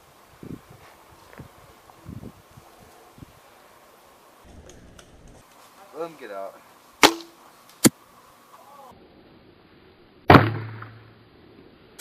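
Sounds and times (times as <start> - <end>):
airsoft rifle shot: 7.0 - 7.4, 10.3 - 11.0.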